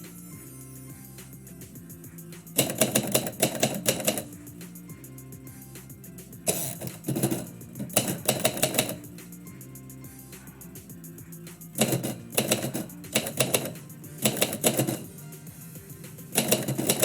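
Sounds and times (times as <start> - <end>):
background music: 0.0 - 17.0
typewriter keys clicking: 2.6 - 4.3, 6.5 - 9.0, 11.8 - 15.1, 16.4 - 17.0.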